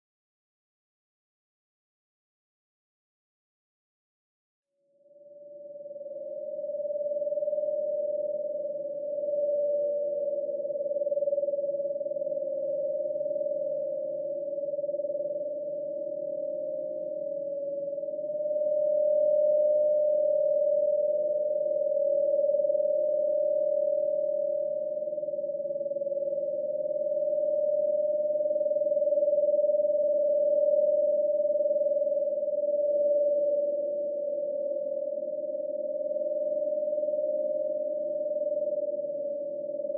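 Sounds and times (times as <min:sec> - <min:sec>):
wavering high ghostly tone: 0:05.4 - 0:39.9.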